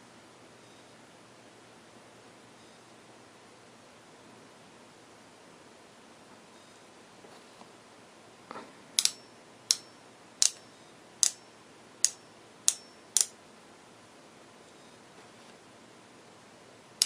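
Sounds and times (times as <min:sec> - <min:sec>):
soft rustle: 0:06.3 - 0:07.8, 0:14.6 - 0:15.7
sharp clicks: 0:09.0 - 0:10.6.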